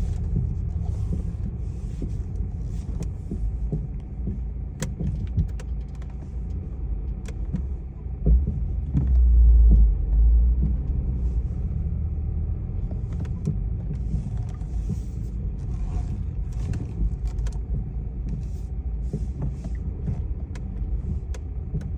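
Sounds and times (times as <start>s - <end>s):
loud low rumble: 0.0s - 2.7s, 7.5s - 21.9s
car low rumble: 0.0s - 21.9s.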